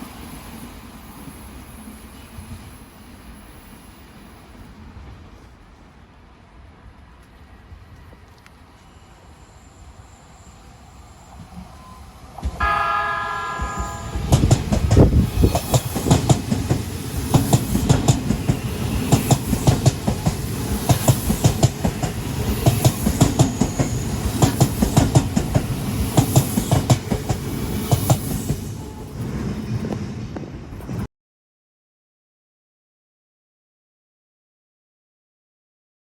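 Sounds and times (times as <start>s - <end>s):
train wheels clattering: 12.4s - 31.1s
train horn: 12.6s - 15.3s.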